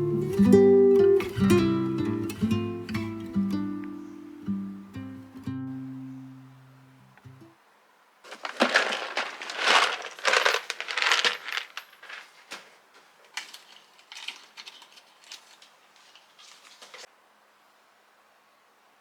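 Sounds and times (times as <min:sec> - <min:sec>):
hard objects clinking and clattering: 0:08.3 - 0:15.7.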